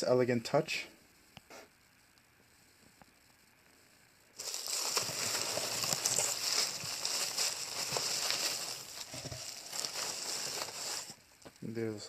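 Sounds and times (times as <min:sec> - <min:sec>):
packaging crinkling and rustling: 0:04.4 - 0:11.5.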